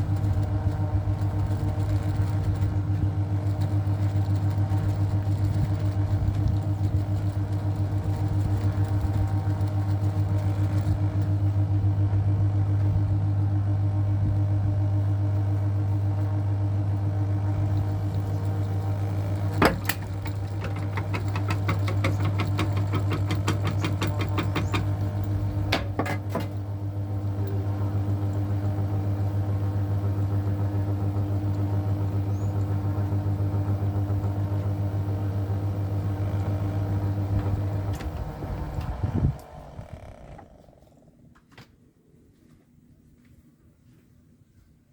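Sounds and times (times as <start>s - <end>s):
ceiling fan motor humming: 0.0s - 41.6s
fast ticks: 17.8s - 25.4s.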